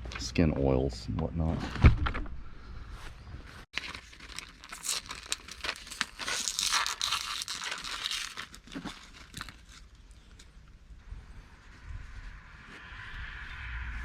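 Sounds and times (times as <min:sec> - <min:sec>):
packaging crinkling and tearing: 0:03.8 - 0:10.6.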